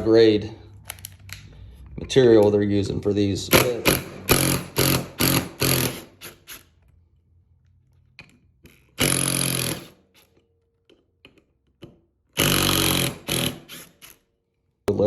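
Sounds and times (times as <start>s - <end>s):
impact driver burst: 3.5s - 6.7s, 8.7s - 10.0s, 12.4s - 14.2s.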